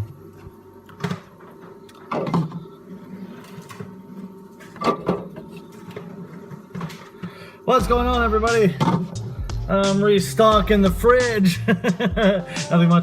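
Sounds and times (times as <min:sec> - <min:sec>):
steady low hum: 0:00.0 - 0:12.8.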